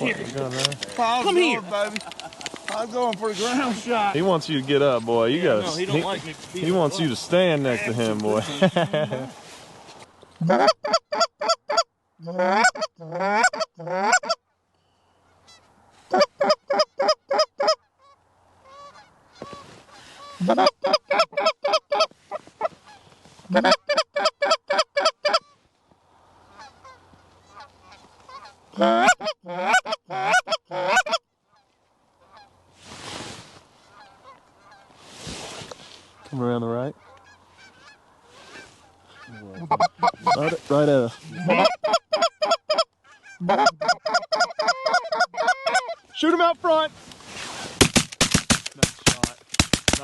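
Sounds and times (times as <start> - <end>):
goose honking: 10.4 - 14.4, 15.4 - 25.6, 26.5 - 32.6, 33.8 - 34.9, 37.0 - 46.4.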